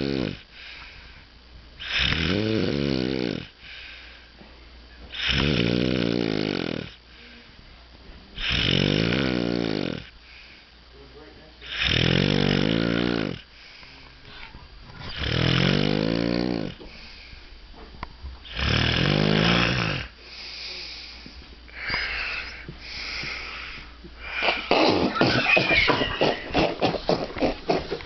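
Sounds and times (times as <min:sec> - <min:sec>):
person snoring loudly: 0:00.0 - 0:00.4, 0:01.8 - 0:03.5, 0:05.1 - 0:07.0, 0:08.4 - 0:10.1, 0:11.6 - 0:13.4, 0:15.1 - 0:16.8, 0:18.5 - 0:20.2.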